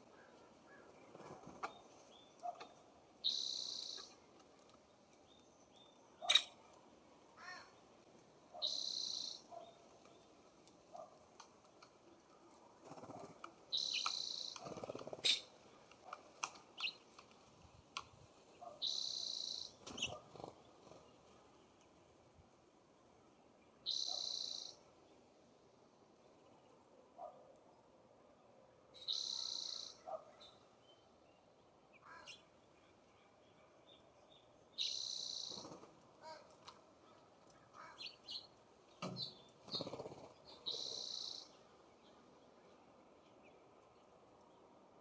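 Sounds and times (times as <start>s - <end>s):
bird harsh raspy call: 8.6s - 9.5s, 32.0s - 32.4s.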